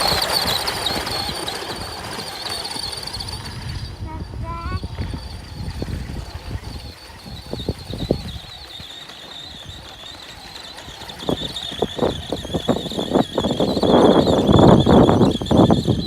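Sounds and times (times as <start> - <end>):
electric motor high whine: 0.0 - 16.0.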